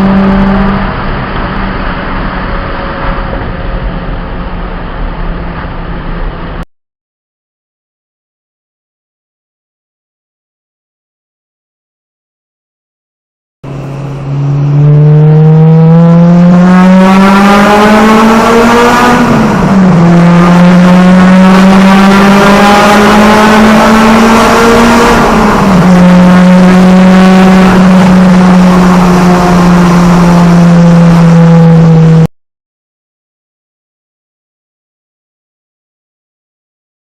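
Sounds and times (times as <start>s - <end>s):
car engine accelerating: 0.0s - 6.7s, 13.6s - 32.3s.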